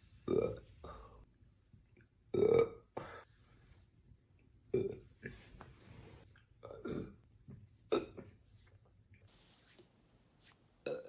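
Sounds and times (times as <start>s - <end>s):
young woman burping: 2.3s - 2.9s, 6.6s - 7.2s, 7.9s - 8.2s.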